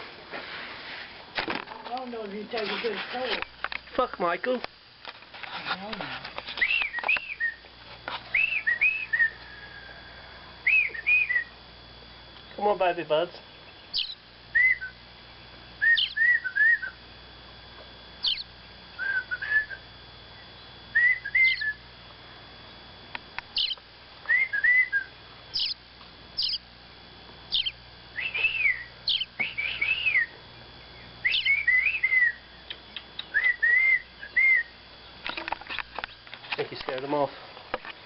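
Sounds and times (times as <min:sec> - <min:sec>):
small birds chirping: 0:06.5 - 0:09.6, 0:10.6 - 0:17.0, 0:18.2 - 0:22.0, 0:23.4 - 0:26.8, 0:27.4 - 0:36.4.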